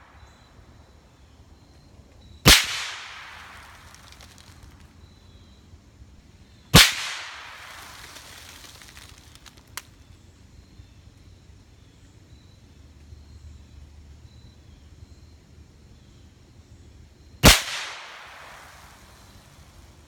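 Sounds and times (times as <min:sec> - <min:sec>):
rifle shot with echo: 0:02.4 - 0:04.4, 0:06.7 - 0:08.2, 0:17.4 - 0:19.1
faint sharp crack: 0:02.5 - 0:05.0, 0:06.8 - 0:10.0, 0:17.4 - 0:18.9.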